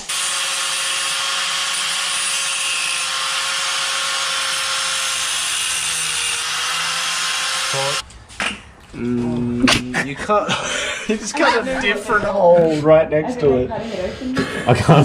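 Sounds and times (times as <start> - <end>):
angle grinder cutting metal: 0.0 - 8.0.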